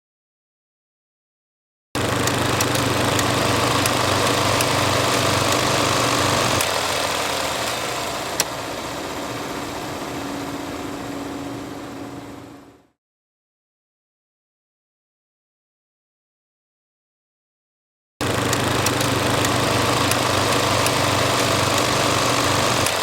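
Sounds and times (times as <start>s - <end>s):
film reel hiss: 2.0s - 12.8s, 18.3s - 23.0s
sharp click: 2.2s - 6.8s, 18.5s - 23.0s
low hum: 8.0s - 13.0s.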